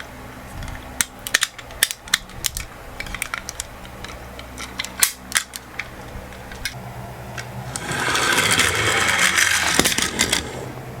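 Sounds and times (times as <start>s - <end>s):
toy cars rolling and rattling: 7.7s - 10.7s.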